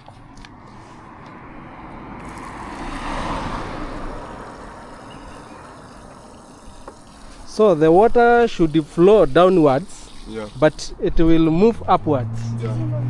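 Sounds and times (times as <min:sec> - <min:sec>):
vehicle passing by: 0:00.1 - 0:07.7, 0:10.8 - 0:13.0.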